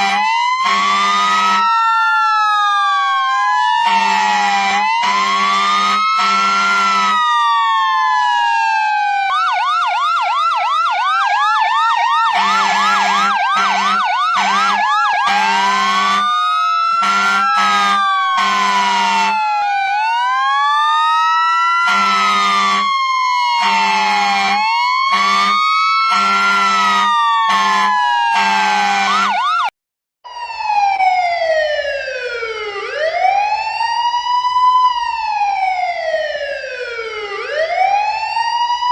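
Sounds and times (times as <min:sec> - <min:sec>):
deep swooping siren: 0:00.0 - 0:38.9
siren wailing: 0:00.0 - 0:38.9
short horn blasts: 0:00.1 - 0:01.6, 0:05.0 - 0:07.2, 0:17.0 - 0:19.4, 0:21.9 - 0:22.9, 0:23.6 - 0:29.1.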